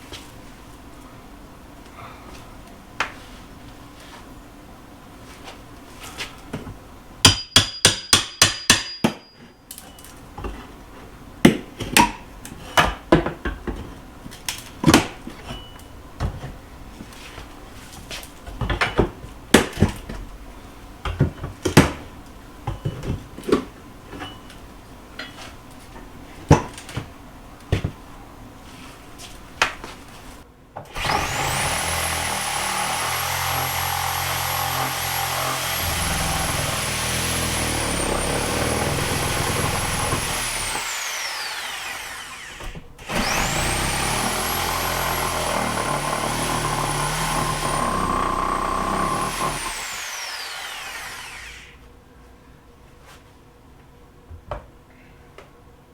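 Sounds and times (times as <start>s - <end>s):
wood cracking: 33.0s - 51.5s.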